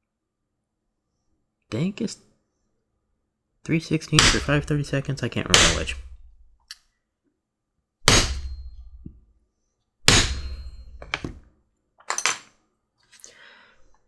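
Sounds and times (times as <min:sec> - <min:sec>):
mallet striking a drive punch: 0:04.2 - 0:06.6, 0:08.0 - 0:09.2, 0:10.0 - 0:11.4.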